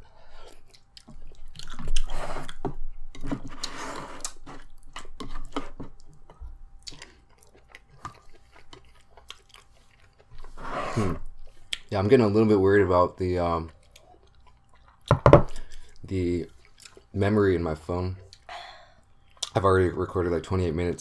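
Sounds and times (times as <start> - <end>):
chewing food: 0.4 - 10.5, 13.6 - 17.1.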